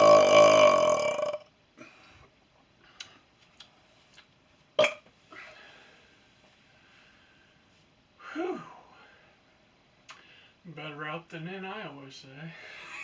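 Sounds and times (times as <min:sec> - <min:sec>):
man burping: 0:00.0 - 0:01.5, 0:04.8 - 0:05.0
faint hiss: 0:01.7 - 0:13.0.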